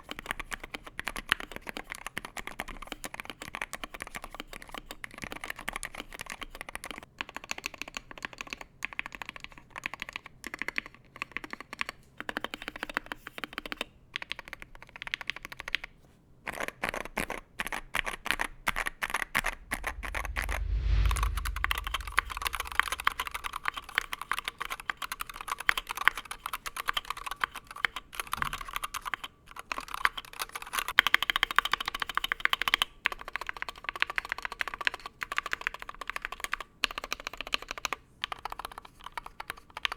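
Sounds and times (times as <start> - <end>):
typing on a keyboard: 13.5 - 15.8, 25.2 - 30.8, 33.4 - 39.9
low whoosh: 19.2 - 24.6.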